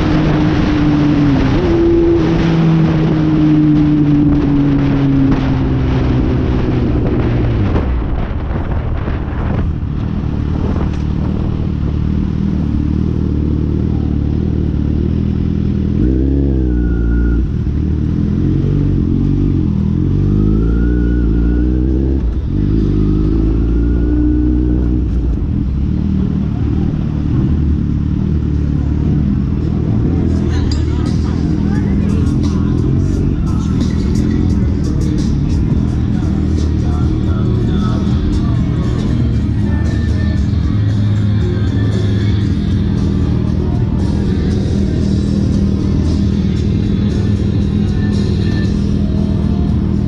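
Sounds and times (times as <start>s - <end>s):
heavy wind noise: 0.0s - 12.7s
motorcycle engine revving: 0.0s - 50.0s.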